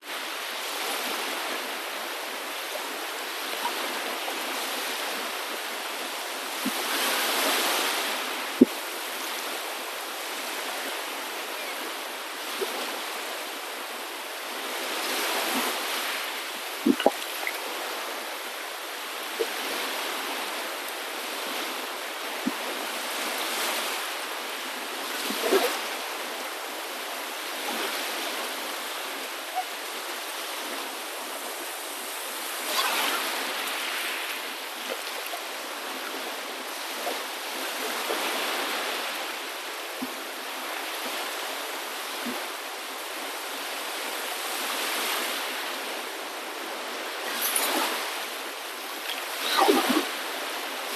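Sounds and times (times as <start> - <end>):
water rushing: 0.0 - 43.1, 43.7 - 50.9.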